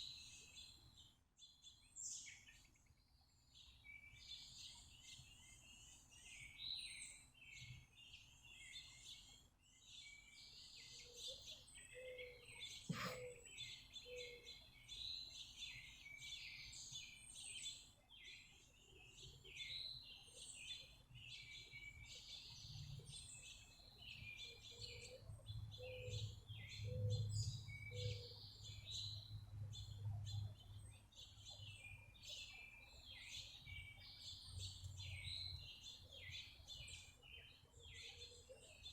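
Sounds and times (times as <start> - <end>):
songbirds chirping and twittering: 0.0 - 38.9.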